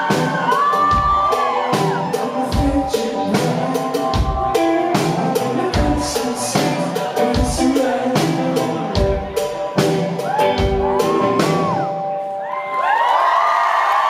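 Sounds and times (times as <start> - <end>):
audience cheering and whooping: 0.0 - 2.5, 10.2 - 14.0
live pop-rock band: 0.0 - 13.5.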